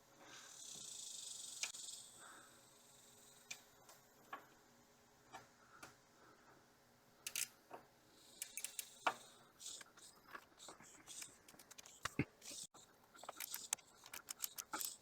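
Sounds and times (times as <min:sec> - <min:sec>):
ratchet clicking: 0:07.3 - 0:07.5, 0:08.3 - 0:09.9, 0:11.1 - 0:15.0.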